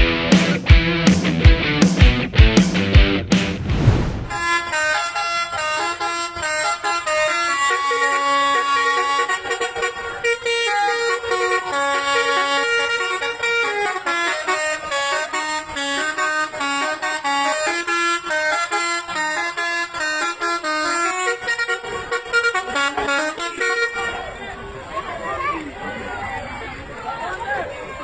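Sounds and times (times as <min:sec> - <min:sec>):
bus air horns playing tune: 0:06.1 - 0:23.9.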